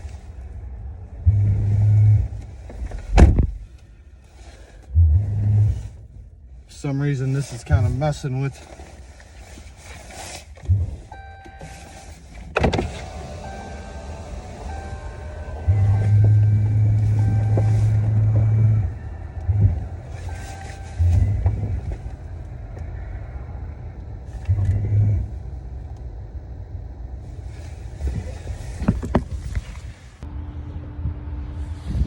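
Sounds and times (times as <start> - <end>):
tow truck winch pulling: 8.6 - 23.0
truck engine idling: 11.1 - 32.0.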